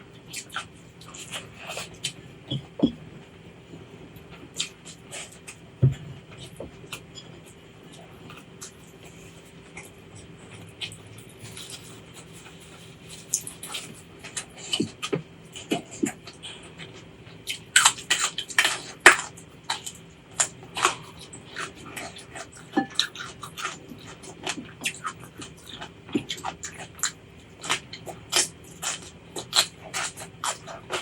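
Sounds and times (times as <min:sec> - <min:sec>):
person chewing food: 0:00.2 - 0:31.0.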